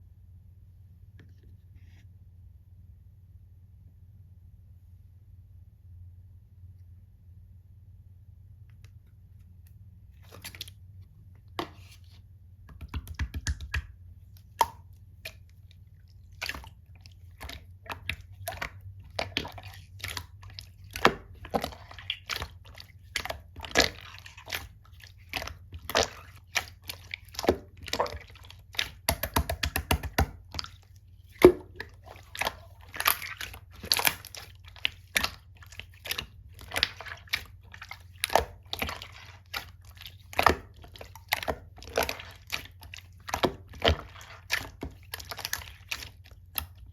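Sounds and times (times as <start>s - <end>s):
slime squishing wet clicks: 10.2s - 10.8s, 12.7s - 46.9s.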